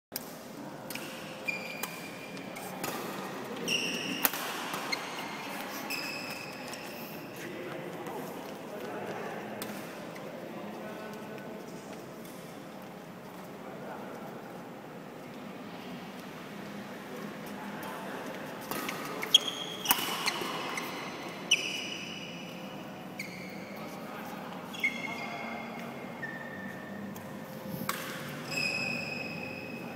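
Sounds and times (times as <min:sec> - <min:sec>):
racket hitting shuttlecock: 0:00.2 - 0:05.2, 0:27.2 - 0:28.6
background murmur: 0:00.3 - 0:29.9
shoes squeaking on court floor: 0:00.9 - 0:10.2, 0:18.6 - 0:29.9.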